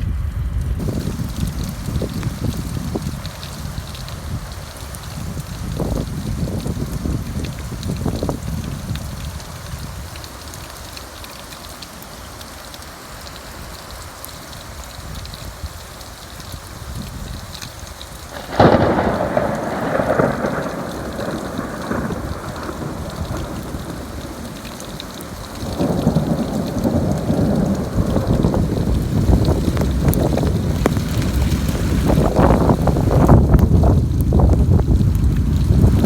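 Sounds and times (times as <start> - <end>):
thunder rumbling: 0.0 - 10.2, 18.3 - 36.0
steady rain: 0.0 - 36.0.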